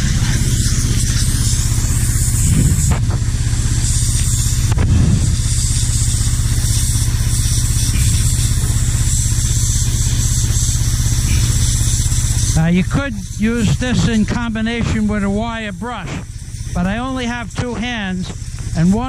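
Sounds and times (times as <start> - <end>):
high-pressure water jet hissing: 0.0 - 19.0
pressure washer motor humming: 0.0 - 19.0.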